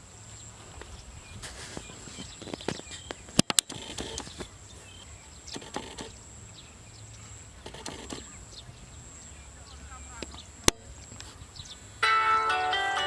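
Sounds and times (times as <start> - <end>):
rustles and clicks: 0.0 - 9.3, 9.9 - 11.6
faint bird chirps: 0.0 - 12.0
sharp clicks: 0.8 - 6.3, 7.5 - 8.7, 10.1 - 11.4.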